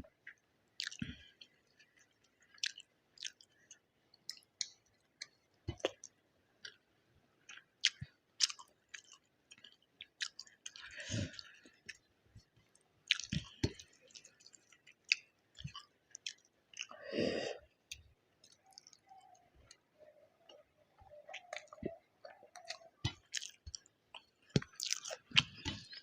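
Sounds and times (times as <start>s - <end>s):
close-miked chewing: 0.2s - 6.8s, 7.4s - 17.0s, 17.7s - 26.0s
wet smacking mouth sounds: 17.9s - 19.8s.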